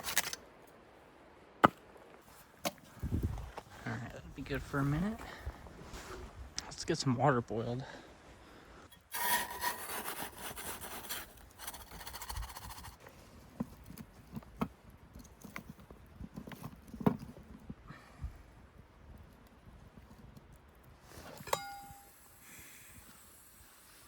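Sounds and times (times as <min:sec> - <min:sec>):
rushing scraping sound: 0:08.9 - 0:13.0
pot and camp gear knocking: 0:21.4 - 0:22.1.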